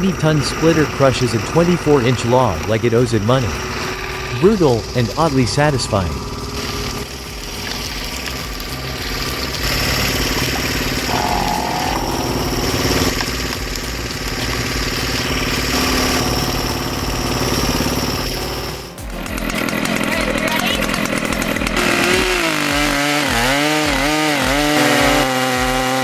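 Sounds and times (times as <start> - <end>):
log splitter engine running: 0.0 - 26.0
brief higher tone: 11.1 - 13.4.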